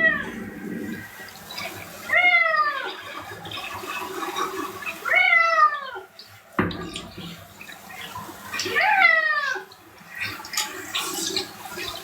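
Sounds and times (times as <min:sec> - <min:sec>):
cat meowing loudly: 0:00.0 - 0:00.4, 0:05.0 - 0:06.0
faint water noise: 0:00.0 - 0:12.0.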